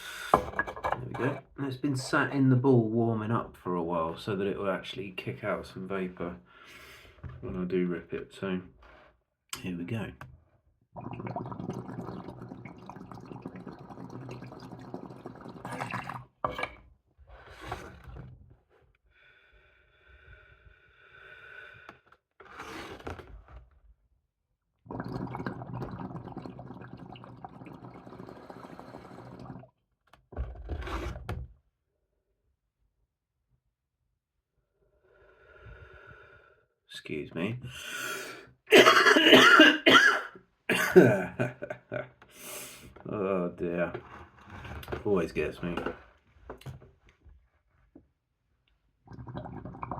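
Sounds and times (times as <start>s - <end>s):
water bubbling in a pipe: 11.0s - 16.6s, 24.9s - 29.7s, 49.0s - 49.9s
person coughing: 38.7s - 41.4s.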